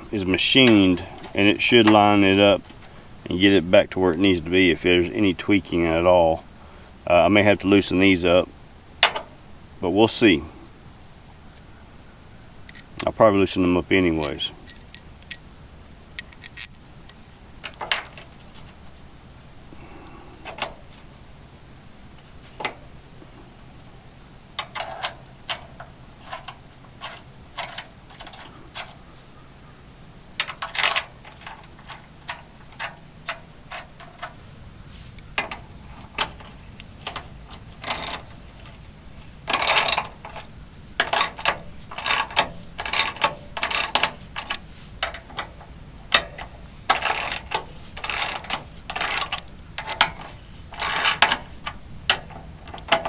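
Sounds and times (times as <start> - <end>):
ratchet wrench clicking: 14.2 - 15.4, 16.2 - 16.8.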